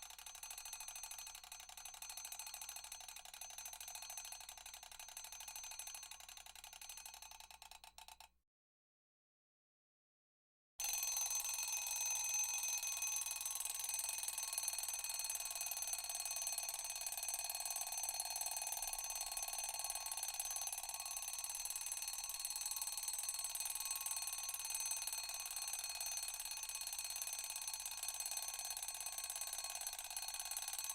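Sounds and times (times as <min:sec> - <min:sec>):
alarm clock bell ringing: 0:10.8 - 0:17.9, 0:18.9 - 0:30.9.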